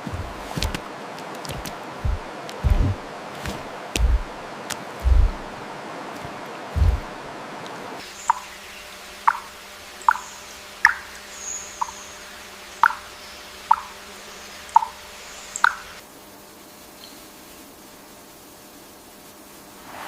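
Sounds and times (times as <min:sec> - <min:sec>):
water plops: 0:09.3 - 0:09.5, 0:10.8 - 0:11.0.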